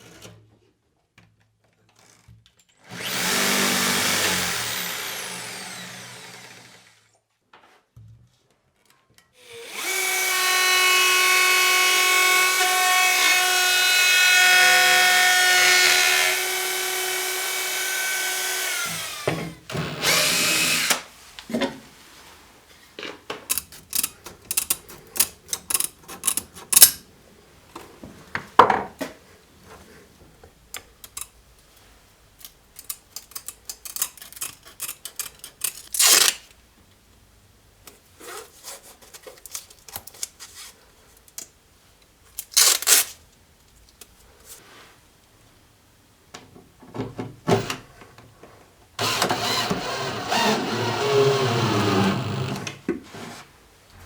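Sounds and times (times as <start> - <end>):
power tool running: 2.9 - 7.0, 9.4 - 21.1, 47.5 - 47.8, 49.0 - 52.8
wood and tools knocking: 28.4 - 29.2.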